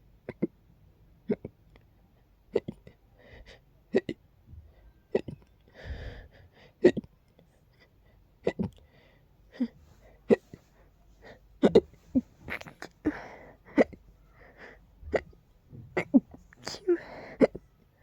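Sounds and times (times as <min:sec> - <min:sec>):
person hiccuping: 0:00.2 - 0:00.6, 0:01.2 - 0:01.6, 0:02.5 - 0:03.0, 0:03.9 - 0:04.2, 0:05.1 - 0:05.5, 0:06.8 - 0:07.1, 0:08.4 - 0:08.8, 0:11.6 - 0:14.0, 0:15.0 - 0:17.6
soft breaths: 0:02.2 - 0:18.0.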